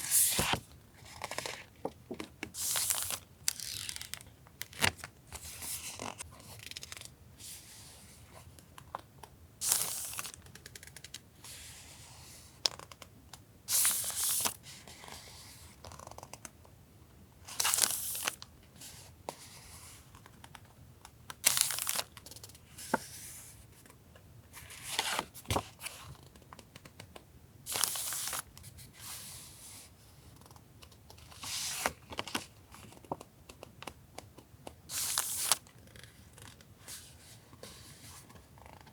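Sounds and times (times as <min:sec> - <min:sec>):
paper rustling and sliding: 0:00.0 - 0:00.6.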